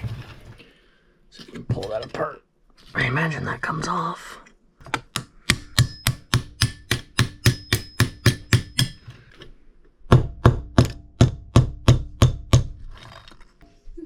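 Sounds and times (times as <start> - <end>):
small hammer tapping metal: 4.9 - 9.1, 10.4 - 12.7.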